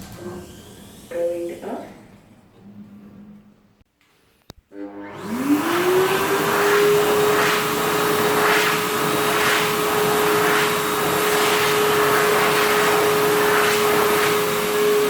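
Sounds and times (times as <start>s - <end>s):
hand dryer motor whine: 4.7s - 15.0s.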